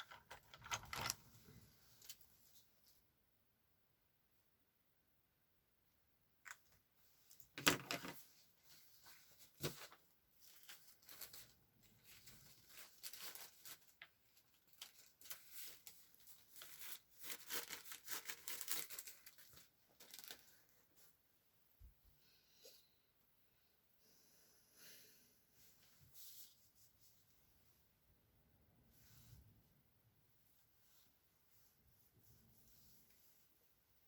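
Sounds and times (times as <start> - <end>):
paper rustling: 7.6 - 21.1.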